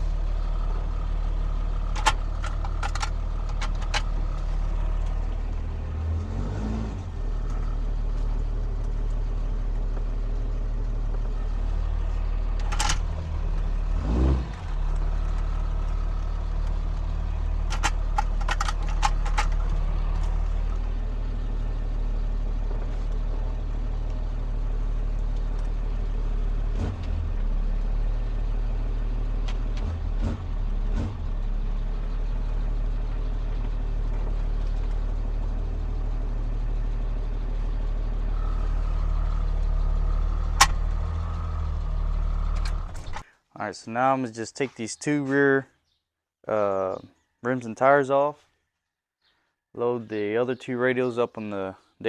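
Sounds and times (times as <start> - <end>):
engine idling: 0.0 - 43.3
metal clanks and clicks: 1.8 - 4.4, 12.5 - 13.4, 16.6 - 20.4.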